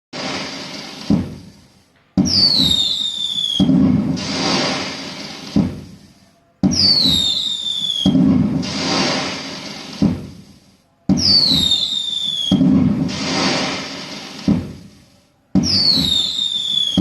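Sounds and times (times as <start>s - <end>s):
firework bang with crackling: 0.1s - 17.0s
firework whistle falling in pitch: 2.2s - 5.8s, 6.6s - 9.3s, 11.1s - 13.9s, 15.6s - 17.0s.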